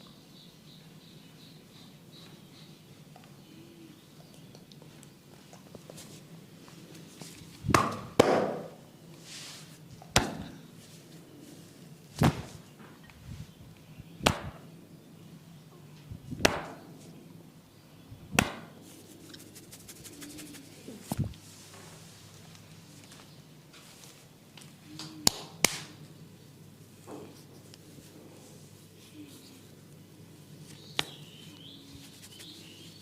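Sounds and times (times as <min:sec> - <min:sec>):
sharp percussive massage strikes: 0:14.2 - 0:14.6.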